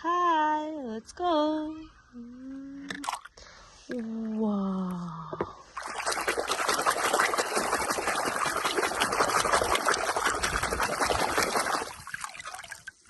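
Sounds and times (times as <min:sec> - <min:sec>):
water running and splashing: 0:05.8 - 0:13.0.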